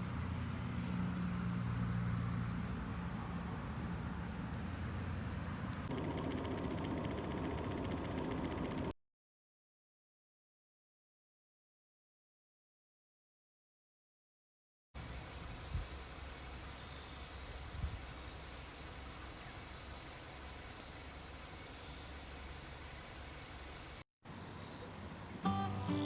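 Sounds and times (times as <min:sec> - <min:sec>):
insects chirping: 0:00.0 - 0:05.9, 0:15.6 - 0:24.0.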